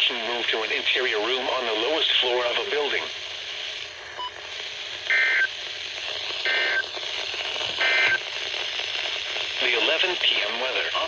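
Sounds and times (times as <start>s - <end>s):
radio hiss: 0.0s - 11.0s
buzzy two-tone data bursts: 5.1s - 8.3s.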